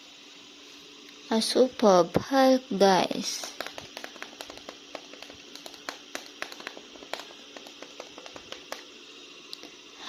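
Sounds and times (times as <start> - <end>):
faint steady hum: 0.0 - 10.0
plastic figure clicking and tapping: 3.4 - 8.9.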